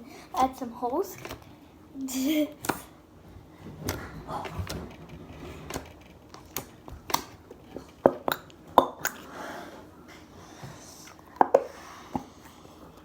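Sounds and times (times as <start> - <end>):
slime clicking and squishing: 5.7 - 9.3.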